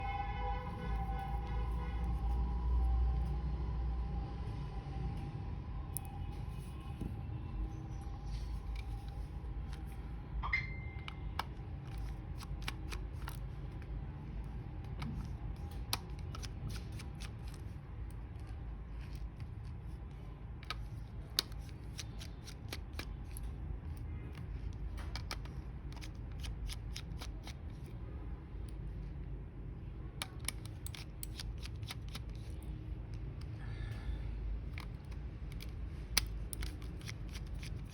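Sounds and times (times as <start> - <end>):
plastic mouse parts clicking: 11.0 - 13.9, 14.8 - 27.9, 30.2 - 33.6, 34.6 - 37.9.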